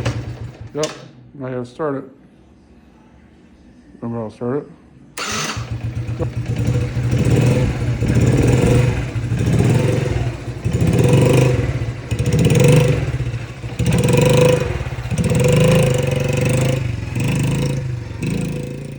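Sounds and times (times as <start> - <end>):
small engine revving: 5.2 - 18.9.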